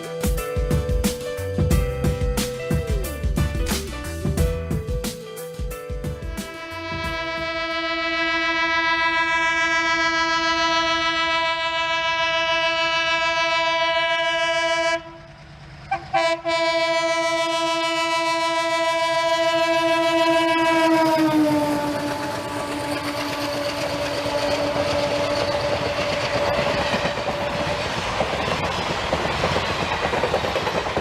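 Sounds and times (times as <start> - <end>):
diesel locomotive horn: 6.2 - 27.3
wheels clacking over rail joints: 20.9 - 31.0.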